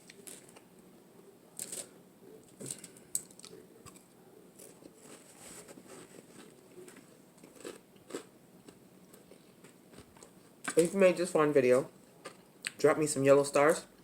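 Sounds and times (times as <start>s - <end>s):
chewing and biting sandwich: 3.2s - 10.4s.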